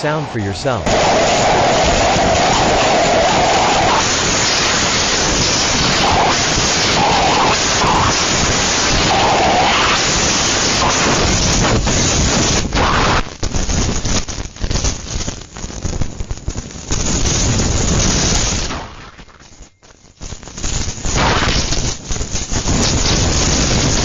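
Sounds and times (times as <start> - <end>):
storm wind on microphone: 0.9 - 12.6.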